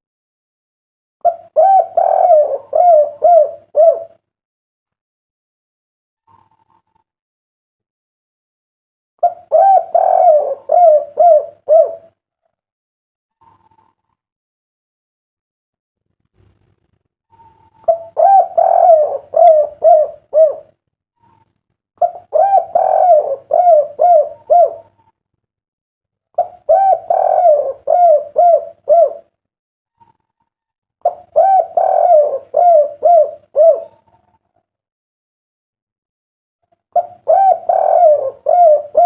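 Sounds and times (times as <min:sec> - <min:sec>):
dove cooing: 0:01.2 - 0:04.2, 0:09.2 - 0:12.2, 0:17.3 - 0:25.1, 0:26.4 - 0:29.3, 0:31.0 - 0:34.6, 0:36.9 - 0:39.0.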